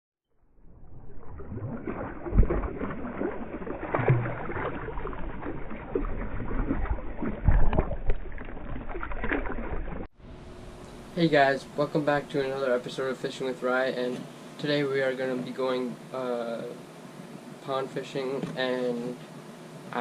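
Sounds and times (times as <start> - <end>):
water splashing and knocking: 1.7 - 10.1.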